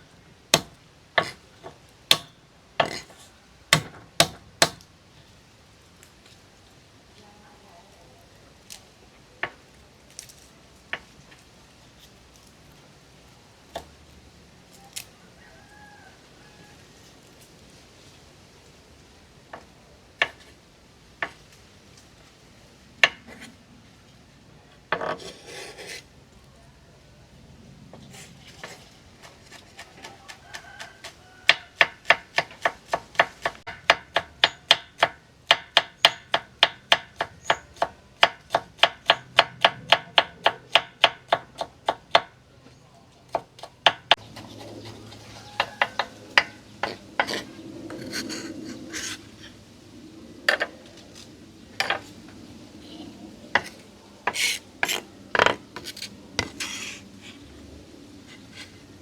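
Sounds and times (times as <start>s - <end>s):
knife chopping on cutting board: 0.6s - 1.4s.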